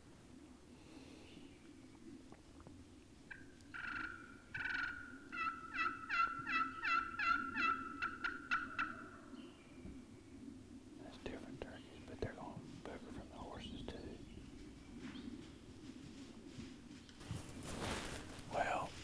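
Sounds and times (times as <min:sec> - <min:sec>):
turkey yelping: 0:03.3 - 0:09.3.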